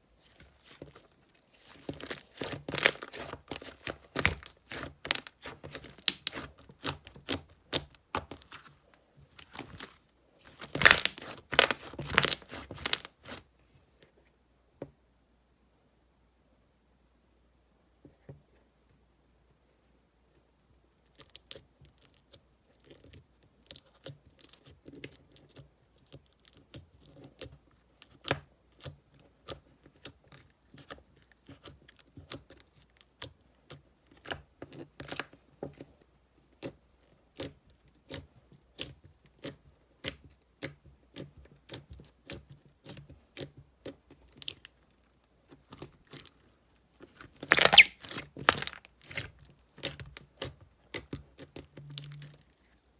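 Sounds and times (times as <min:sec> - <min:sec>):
sticky slime clicks and crackles: 0:01.9 - 0:08.7, 0:10.6 - 0:13.4, 0:47.2 - 0:52.4.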